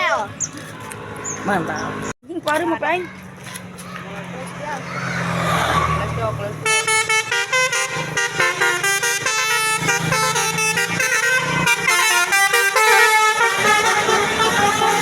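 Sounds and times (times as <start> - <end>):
multi-tone bus horn tune: 6.6 - 15.0.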